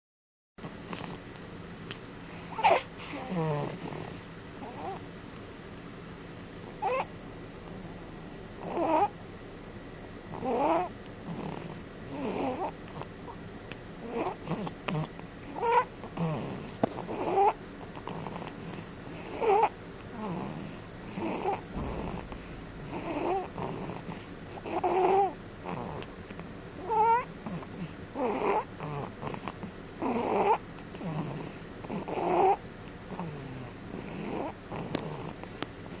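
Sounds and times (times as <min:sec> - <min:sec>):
snoring with whistling breaths: 0:10.3 - 0:12.8, 0:26.9 - 0:35.4.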